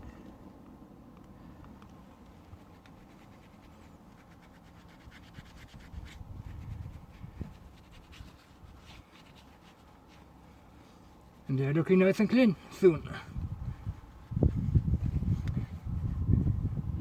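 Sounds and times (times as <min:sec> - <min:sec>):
cloth rubbing wheel rim: 0:01.9 - 0:11.5, 0:13.4 - 0:17.0.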